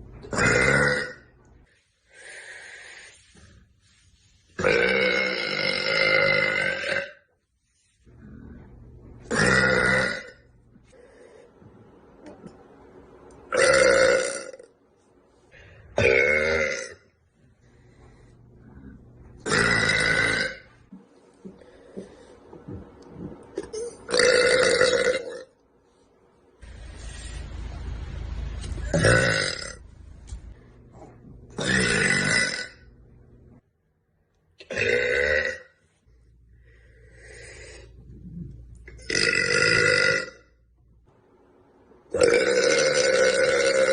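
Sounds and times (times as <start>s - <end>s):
woman burping: 0.3s - 1.2s, 4.6s - 7.2s, 9.3s - 10.4s, 16.0s - 17.0s, 19.4s - 20.7s, 23.6s - 25.5s, 31.6s - 32.8s, 34.6s - 35.7s, 39.0s - 40.4s.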